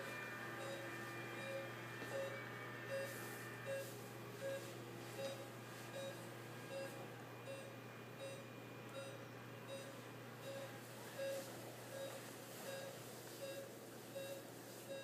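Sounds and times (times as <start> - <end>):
low steady hum: 0.0 - 15.0
patient monitor beeping: 0.0 - 15.0.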